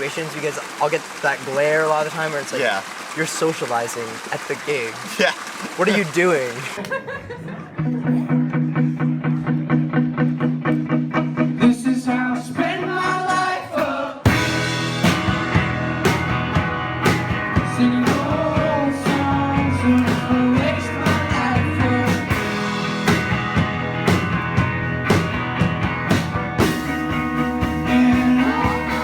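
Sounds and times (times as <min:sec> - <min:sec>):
rock band with drums: 0:00.0 - 0:29.0
guitar picking repeated notes: 0:07.7 - 0:12.3, 0:14.3 - 0:29.0
person singing: 0:11.4 - 0:14.4, 0:17.6 - 0:22.7, 0:27.6 - 0:29.0.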